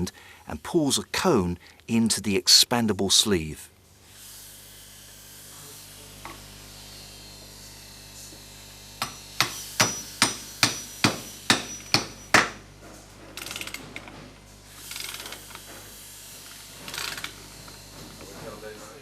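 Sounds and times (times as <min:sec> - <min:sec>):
hammer striking metal fixing: 0:09.0 - 0:12.6
rasping ratchet-like sound: 0:13.4 - 0:13.8, 0:14.7 - 0:15.7, 0:16.8 - 0:17.8.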